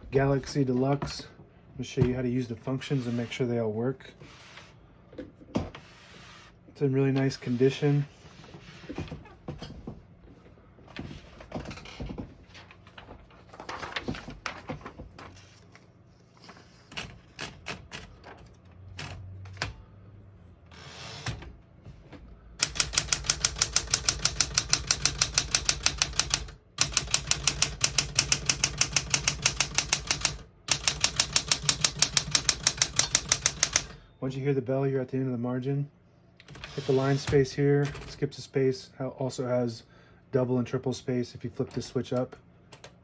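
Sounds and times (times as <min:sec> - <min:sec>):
typewriter key strikes: 0:22.6 - 0:33.9.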